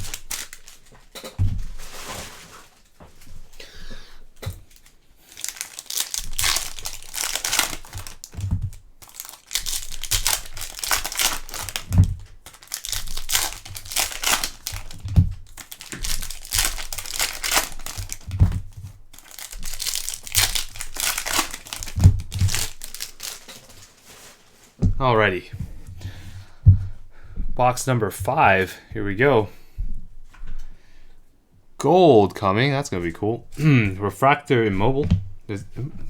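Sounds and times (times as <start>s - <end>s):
plastic wrapping crinkling and tearing: 0.0s - 3.6s, 4.5s - 25.4s
soft thump: 24.8s - 27.6s.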